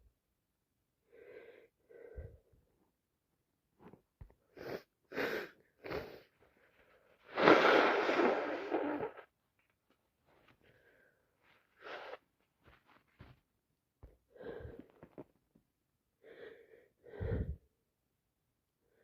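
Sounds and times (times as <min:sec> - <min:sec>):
quiet breaths: 0:01.0 - 0:03.0, 0:14.0 - 0:15.3, 0:16.2 - 0:17.8
loud sneeze: 0:07.3 - 0:09.2.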